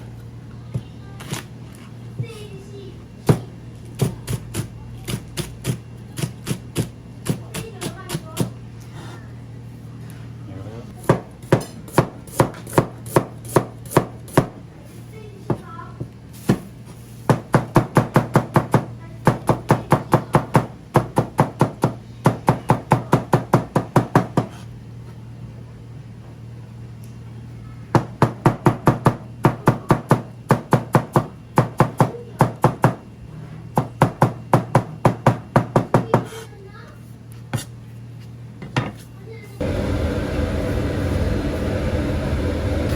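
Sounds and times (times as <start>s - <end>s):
knife chopping on cutting board: 11.0s - 14.6s
steady low hum: 37.1s - 42.9s.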